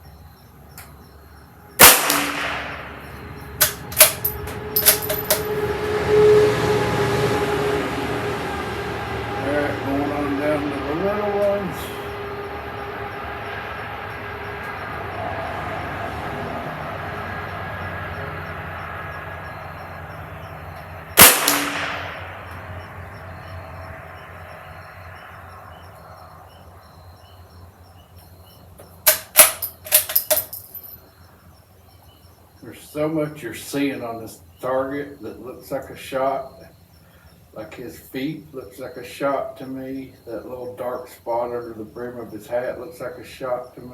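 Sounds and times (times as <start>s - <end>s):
background rumble: 0.1s - 43.9s
rifle shot: 1.8s - 5.2s, 21.2s - 22.4s, 29.1s - 30.2s.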